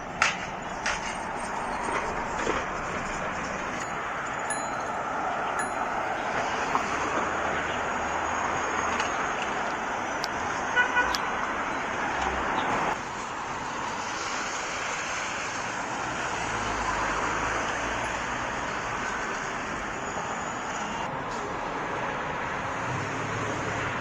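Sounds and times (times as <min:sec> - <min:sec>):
city street traffic: 0:00.0 - 0:24.0
car horn toot: 0:10.7 - 0:11.4.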